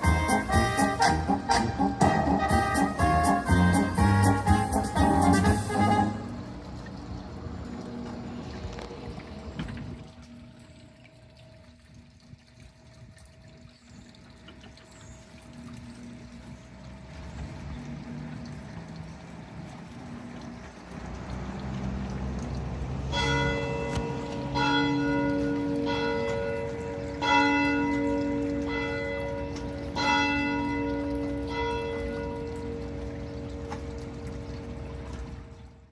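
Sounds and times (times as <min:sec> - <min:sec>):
low tones playing a tune: 0:00.0 - 0:08.5
clock bell striking: 0:23.1 - 0:34.0.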